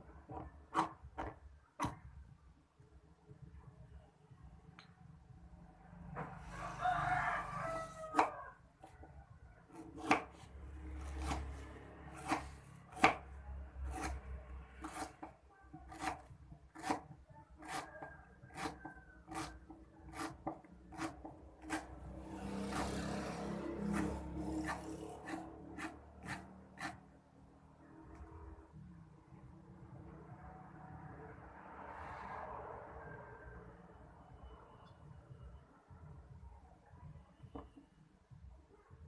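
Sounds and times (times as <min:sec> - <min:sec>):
knife chopping on cutting board: 0:00.3 - 0:02.0, 0:09.7 - 0:10.4, 0:12.2 - 0:13.2, 0:13.9 - 0:14.2, 0:14.8 - 0:15.3, 0:15.9 - 0:17.9, 0:18.5 - 0:21.9, 0:24.0 - 0:27.0
rooster crowing: 0:06.4 - 0:08.6.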